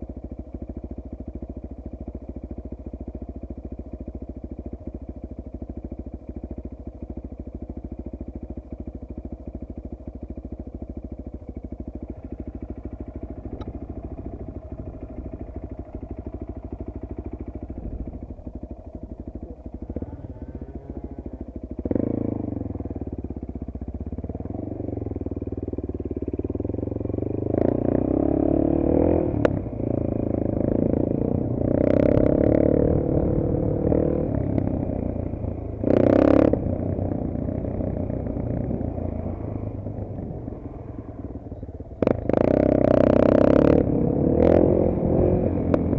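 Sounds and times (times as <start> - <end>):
dirt-bike engine idling: 0.0 - 45.9
dirt-bike engine revving: 13.5 - 23.3, 26.1 - 45.9.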